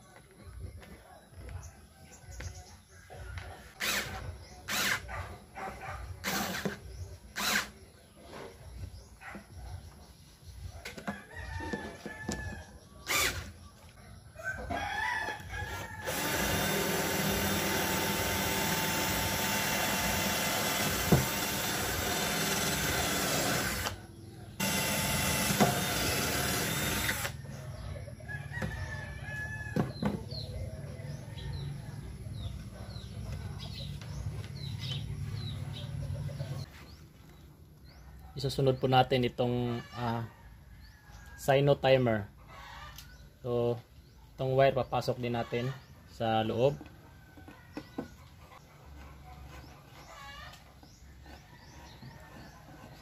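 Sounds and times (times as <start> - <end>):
roosters crowing: 2.0 - 8.0, 10.8 - 33.1, 39.4 - 43.3, 49.6 - 53.0
power drill running: 3.8 - 5.0, 6.2 - 6.8, 7.4 - 7.7, 13.1 - 13.5, 15.7 - 24.0, 24.6 - 27.4
chicks cheeping: 27.4 - 40.3, 40.9 - 53.0
chickens clucking: 30.1 - 37.5, 42.1 - 53.0.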